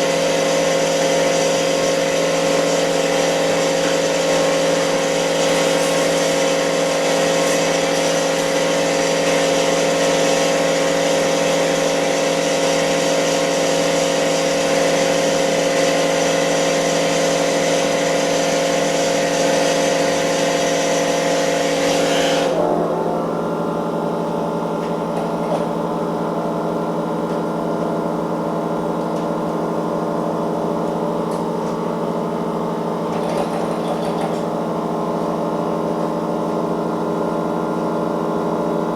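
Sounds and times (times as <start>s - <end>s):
machine humming: 21.1s - 37.5s.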